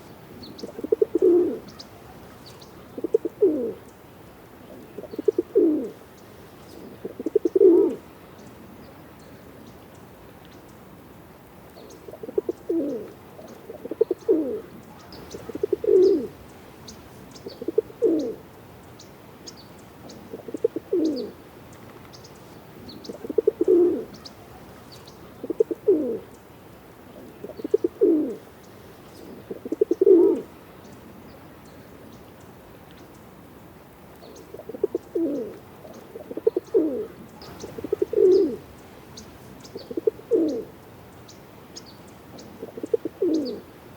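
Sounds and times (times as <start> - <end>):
pigeon cooing: 0.0 - 3.8, 4.7 - 6.0, 6.7 - 8.0, 12.1 - 16.4, 17.4 - 18.5, 20.1 - 21.4, 22.8 - 26.3, 27.2 - 28.4, 29.2 - 30.5, 34.5 - 38.7, 39.7 - 40.8, 42.5 - 43.7.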